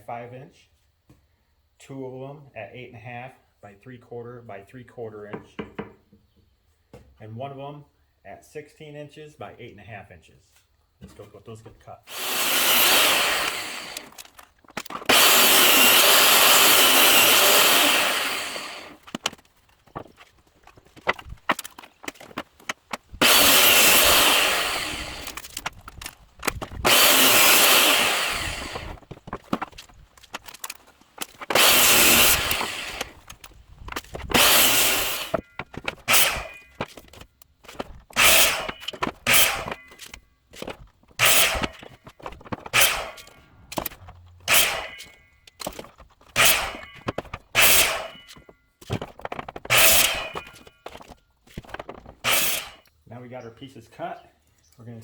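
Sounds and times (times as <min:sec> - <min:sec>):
power saw cutting wood: 0:12.1 - 0:19.4, 0:21.2 - 0:52.9.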